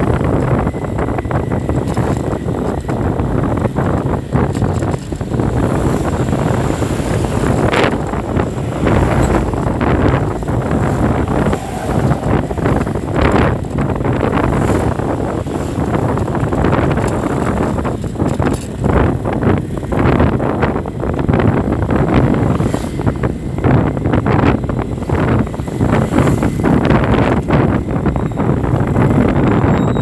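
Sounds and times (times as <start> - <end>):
street traffic: 0.0 - 30.0
wind rumble on microphone: 0.0 - 30.0.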